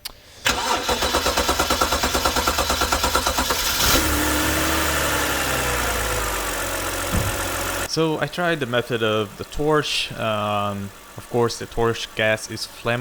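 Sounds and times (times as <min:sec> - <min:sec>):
car engine cranking and idling: 0:00.4 - 0:07.9.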